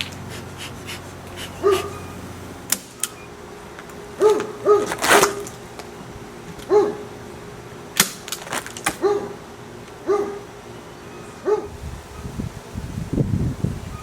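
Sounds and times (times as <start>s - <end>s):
dog barking: 1.6s - 2.0s, 4.2s - 5.0s, 6.7s - 7.0s, 9.0s - 9.4s, 10.0s - 10.5s, 11.4s - 11.7s.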